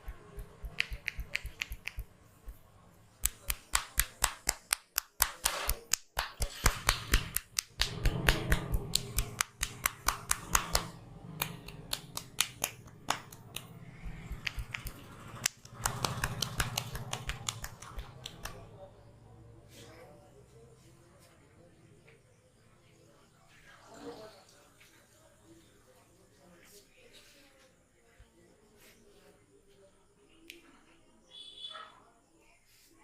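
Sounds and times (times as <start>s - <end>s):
hand slaps and claps: 0.0s - 2.6s, 3.2s - 18.7s.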